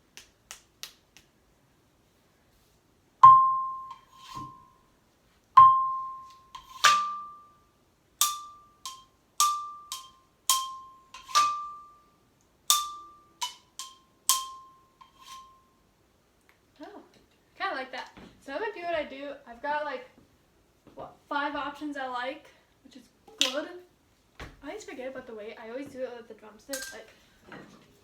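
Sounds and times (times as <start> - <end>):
xylophone notes: 3.2 - 4.1, 5.6 - 7.4.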